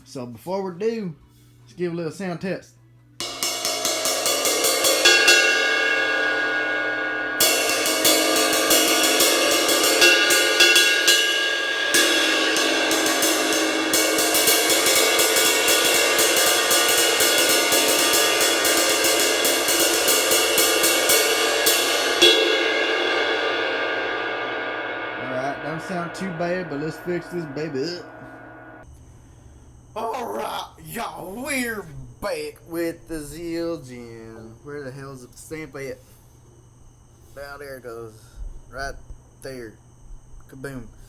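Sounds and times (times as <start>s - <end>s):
ride cymbal struck and ringing: 3.2s - 28.9s.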